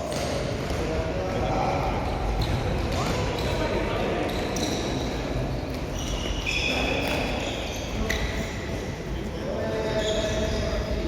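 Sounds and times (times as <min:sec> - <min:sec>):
murmur of players: 0:00.0 - 0:11.0
shoes squeaking on court floor: 0:02.2 - 0:11.0.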